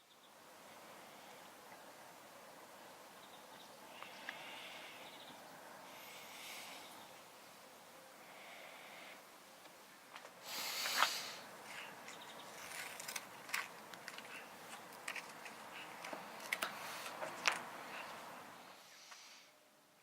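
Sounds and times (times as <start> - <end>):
short hissing burst: 10.4 - 11.5.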